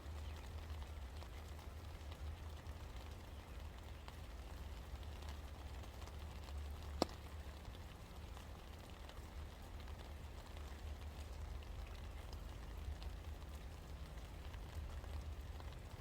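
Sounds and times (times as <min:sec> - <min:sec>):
low steady rumble: 0:00.0 - 0:16.0
raindrops tapping: 0:00.0 - 0:16.0
steady rain falling: 0:00.0 - 0:16.0.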